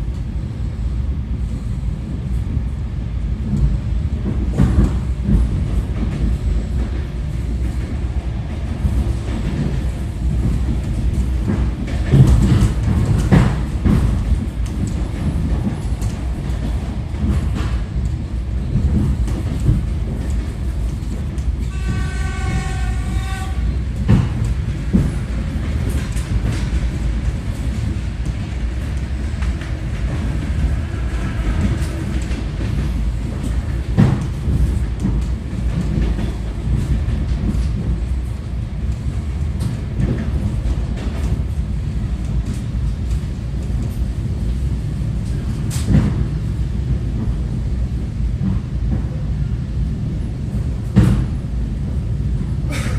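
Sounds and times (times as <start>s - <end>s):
train rumble inside carriage: 0.0s - 52.9s
train wheel clicks: 3.5s - 49.2s
train horn: 21.7s - 23.7s.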